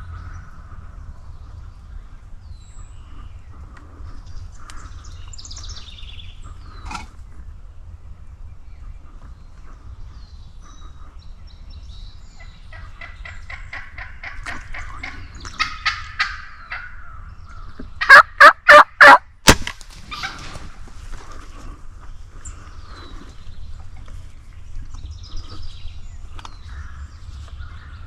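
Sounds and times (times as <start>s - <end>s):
turkeys gobbling: 12.7s - 17.0s, 18.0s - 19.2s, 20.1s - 20.6s.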